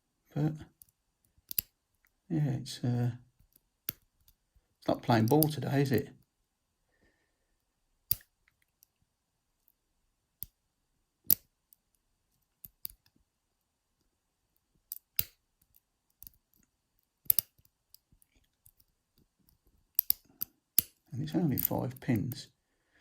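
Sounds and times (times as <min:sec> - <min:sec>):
lock pick clicking on pins: 0:00.8 - 0:01.7, 0:03.4 - 0:04.4, 0:08.1 - 0:08.9, 0:11.3 - 0:11.5, 0:12.6 - 0:13.1, 0:14.9 - 0:18.9, 0:19.5 - 0:21.9.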